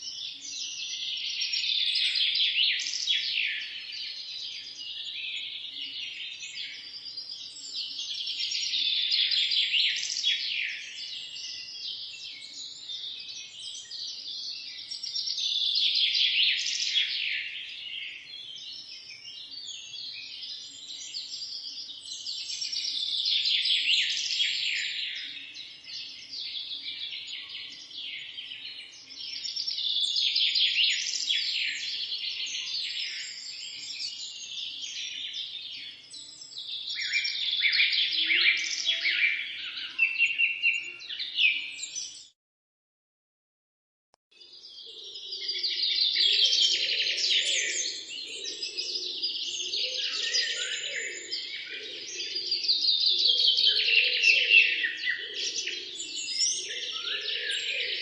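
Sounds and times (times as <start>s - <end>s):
small birds chirping: 0.0s - 42.4s, 44.4s - 58.0s.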